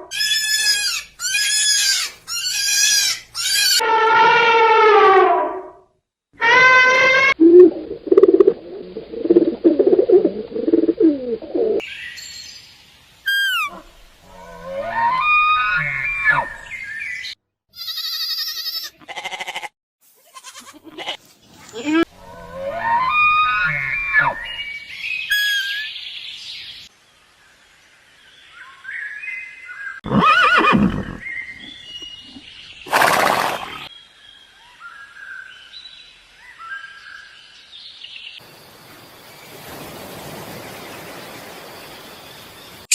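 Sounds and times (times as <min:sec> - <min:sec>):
bird low pulsed calls: 0:07.4 - 0:11.8
hissy background: 0:07.4 - 0:14.7, 0:34.5 - 0:42.9
short high falling call: 0:13.3 - 0:13.8
horse whinnying: 0:30.1 - 0:31.7.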